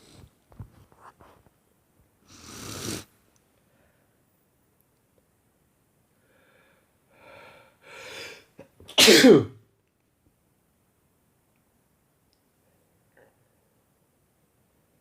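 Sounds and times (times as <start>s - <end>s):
man sneezing: 8.2s - 9.6s.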